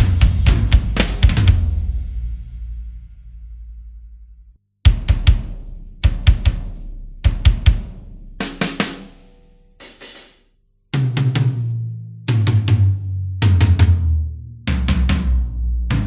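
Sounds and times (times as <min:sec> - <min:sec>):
kick and snare drum fills: 0:00.0 - 0:02.5, 0:04.9 - 0:10.4.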